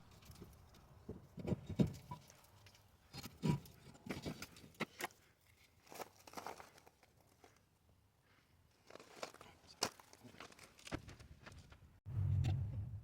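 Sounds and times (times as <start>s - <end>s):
metal parts knocking and scraping: 0.1s - 5.0s.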